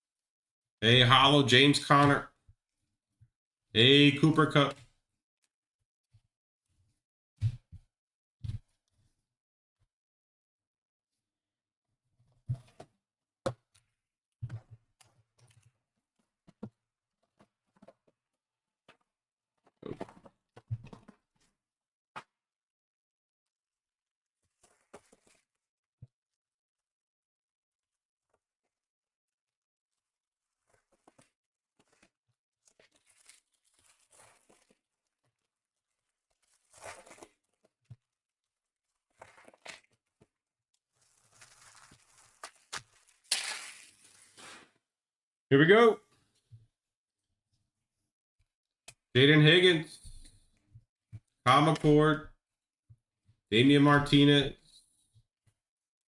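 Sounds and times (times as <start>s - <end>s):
foil packs rustling: 32.6s - 35.2s, 40.9s - 44.7s.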